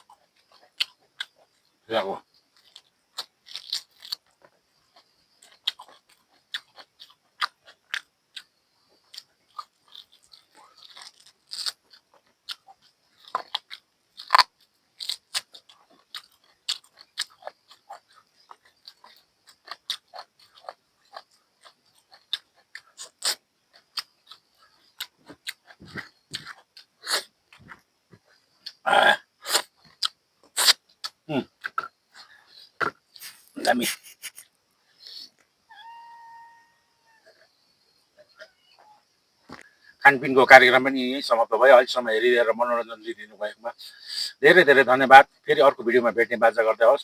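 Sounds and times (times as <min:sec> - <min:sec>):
chewing and lip smacks: 0:00.0 - 0:28.8.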